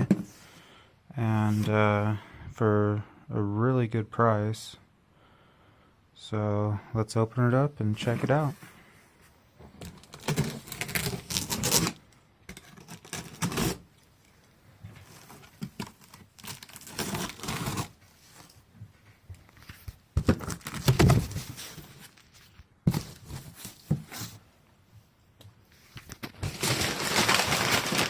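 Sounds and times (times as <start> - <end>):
tape ripping off cardboard: 10.1 - 12.0, 12.6 - 13.9, 15.8 - 18.0.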